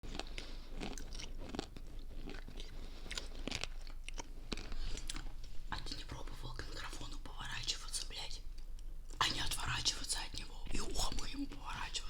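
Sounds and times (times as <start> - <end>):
person chewing crunchy chalk: 0.0 - 5.4.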